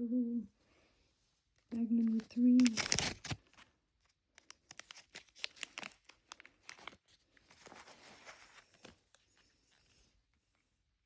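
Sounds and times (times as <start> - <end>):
plastic bag crackling: 2.1 - 3.6, 4.7 - 9.0
plastic bag rustling: 2.1 - 3.7, 4.7 - 9.8.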